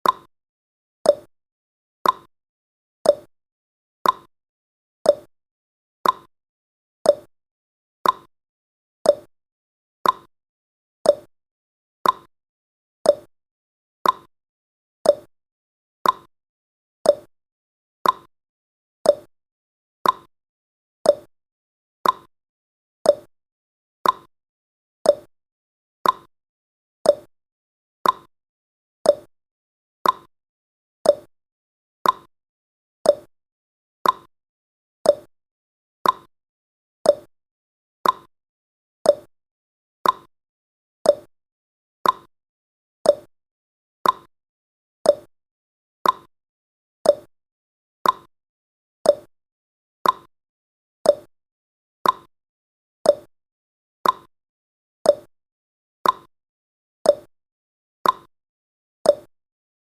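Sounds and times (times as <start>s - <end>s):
clock ticking: 38.0s - 38.3s, 42.0s - 42.3s, 44.0s - 44.3s.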